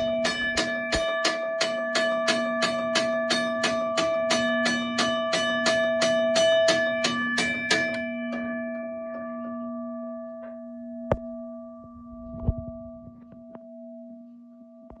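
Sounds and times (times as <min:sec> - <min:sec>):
railroad crossing bell ringing: 0:00.0 - 0:09.9.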